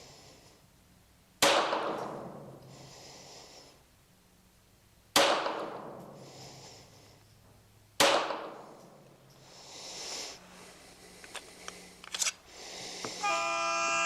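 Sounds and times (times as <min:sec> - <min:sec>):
pistol shot with echo: 0:01.4 - 0:02.6, 0:05.1 - 0:06.2, 0:08.0 - 0:09.0.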